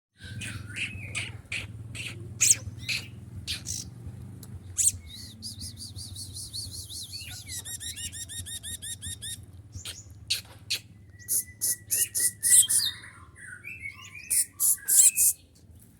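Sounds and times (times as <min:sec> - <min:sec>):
bird singing: 0:00.2 - 0:03.9, 0:04.7 - 0:15.4
fast trill of chirps: 0:00.2 - 0:03.9, 0:04.8 - 0:09.4, 0:10.7 - 0:13.1, 0:14.2 - 0:15.4.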